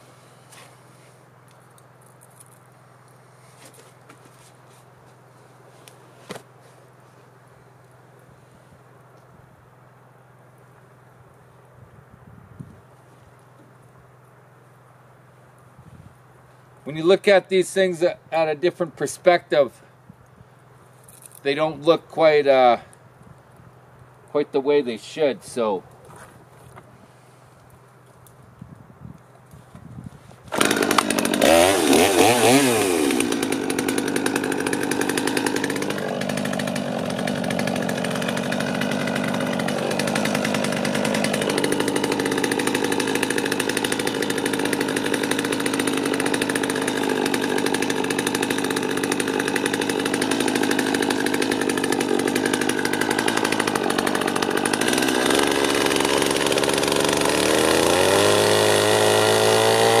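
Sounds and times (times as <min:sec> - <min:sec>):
power sander on wood: 0:30.5 - 1:00.0.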